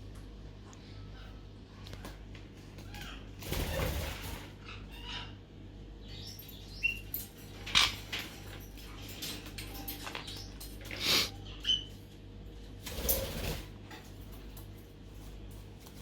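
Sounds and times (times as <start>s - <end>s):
wing flapping: 3.4s - 4.6s, 12.8s - 13.8s
soft bird chirps: 6.0s - 7.9s.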